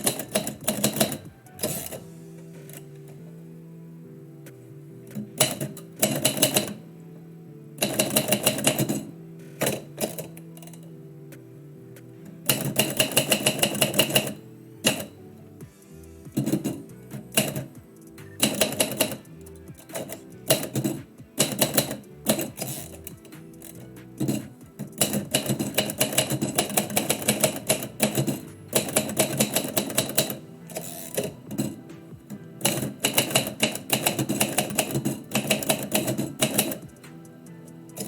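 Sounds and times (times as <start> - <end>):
typewriter keys typing: 0.0 - 2.0, 7.8 - 9.0, 12.5 - 15.2, 16.3 - 37.3
background music: 0.0 - 38.0.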